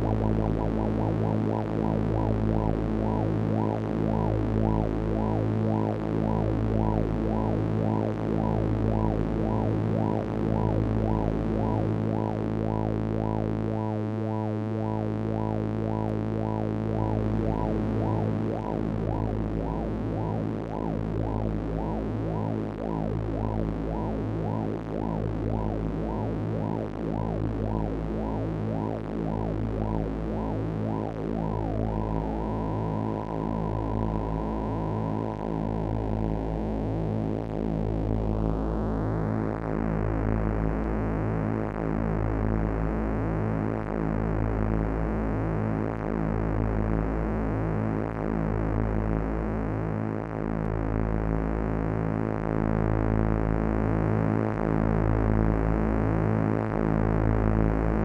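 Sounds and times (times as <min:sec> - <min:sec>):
buzzy synthesizer drone: 0:00.0 - 0:39.7.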